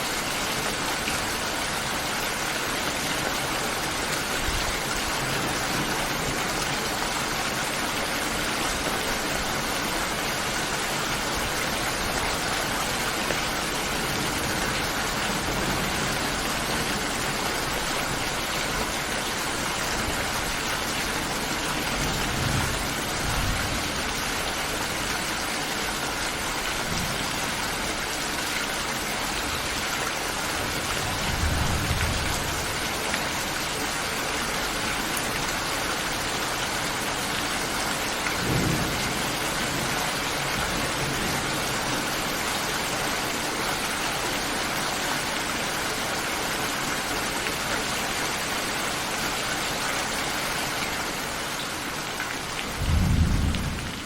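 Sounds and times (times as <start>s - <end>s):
low rumbles of thunder: 31.1s - 32.7s, 52.7s - 54.0s.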